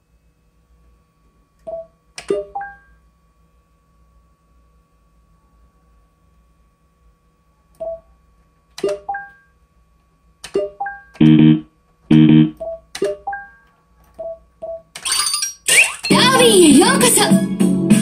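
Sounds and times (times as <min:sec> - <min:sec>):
buzzy electronic tones: 0:11.2 - 0:12.6.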